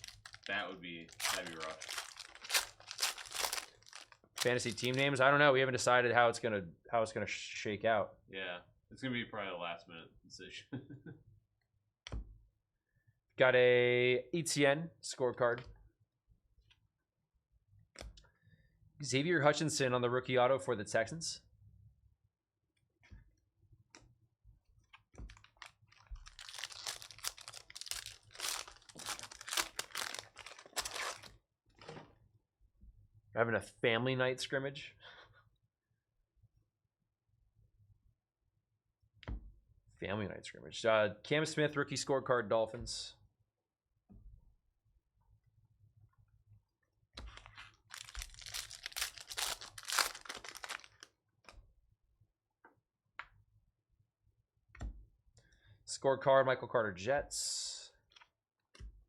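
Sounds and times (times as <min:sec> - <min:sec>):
wrappers crinkling and tearing: 0:00.0 - 0:05.1, 0:25.3 - 0:31.3, 0:47.3 - 0:51.1.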